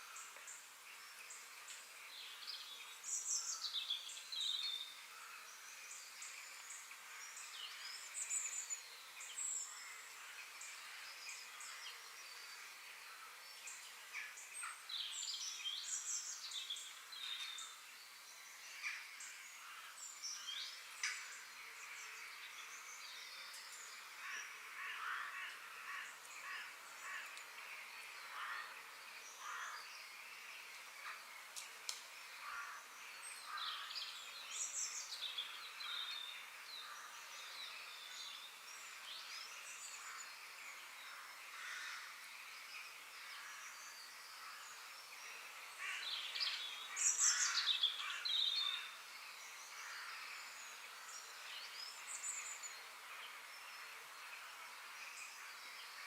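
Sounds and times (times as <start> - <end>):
birds singing and chirping: 0.0 - 56.0
faint steady hiss: 0.0 - 56.0.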